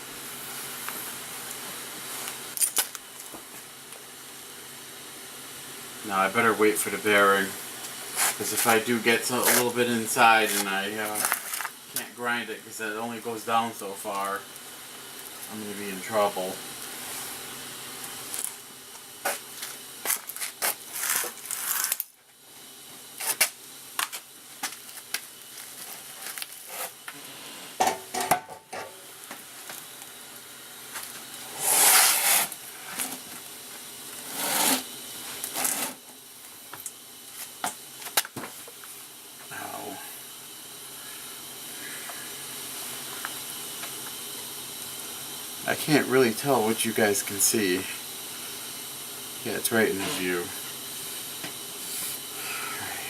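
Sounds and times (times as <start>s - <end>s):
faint steady hiss: 0.0s - 53.0s
hissing bursts: 30.2s - 36.0s.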